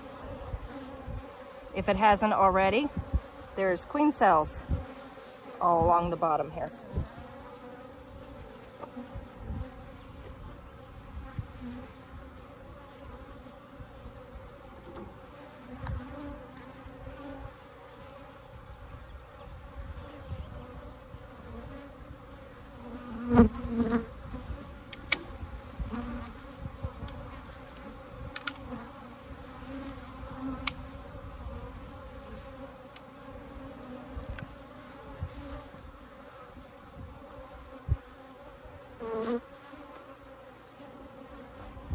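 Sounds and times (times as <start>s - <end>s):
bees buzzing: 0.0s - 41.9s
knocks and clatters of hive: 14.8s - 17.4s, 23.0s - 29.1s.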